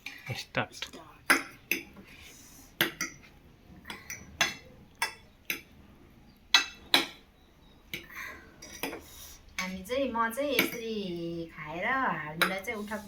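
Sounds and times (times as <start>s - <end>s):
cutlery clinking against plates: 7.9s - 9.0s.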